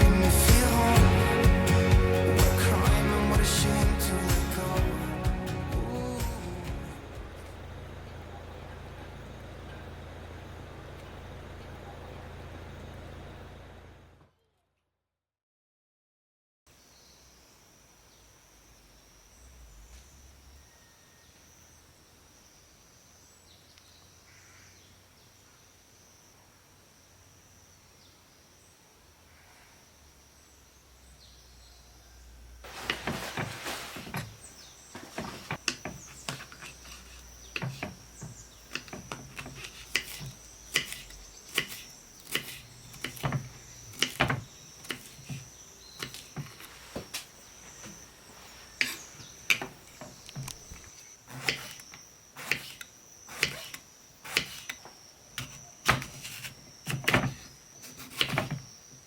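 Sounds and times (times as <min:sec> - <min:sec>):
high insect drone: 0:16.7 - 0:31.8, 0:32.5 - 0:59.0
knife chopping on wooden board: 0:37.6 - 0:46.4, 0:51.3 - 0:51.8, 0:52.4 - 0:54.7, 0:55.4 - 0:58.6.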